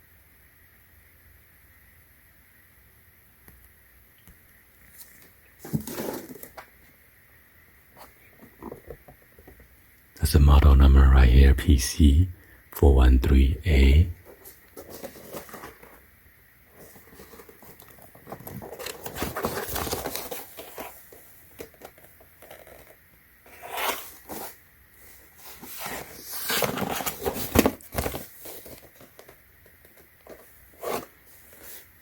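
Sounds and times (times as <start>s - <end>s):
packaging rustling and scraping: 4.9s - 6.9s, 8.0s - 9.7s, 14.2s - 16.1s, 16.7s - 32.0s.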